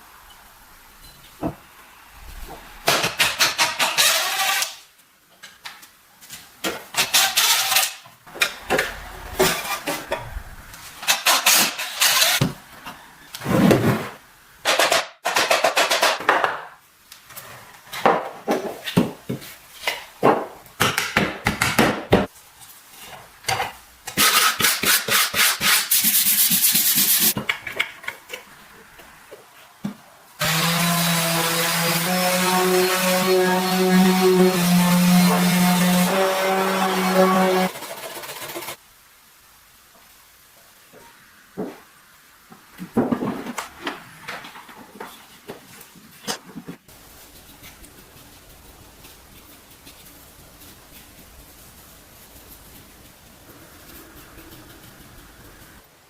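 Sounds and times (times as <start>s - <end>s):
hand sanding strokes: 24.2s - 27.4s, 30.4s - 38.8s.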